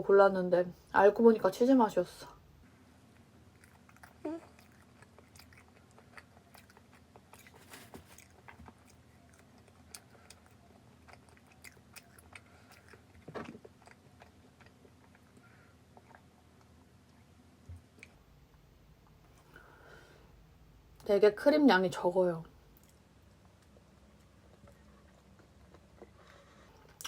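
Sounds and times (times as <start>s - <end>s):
chewing and biting bread: 3.1s - 17.1s, 22.8s - 27.0s.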